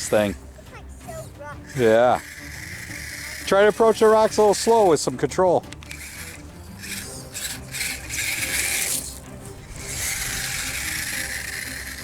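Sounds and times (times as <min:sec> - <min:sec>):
electric motor and gearbox whirring: 0:00.0 - 0:12.0.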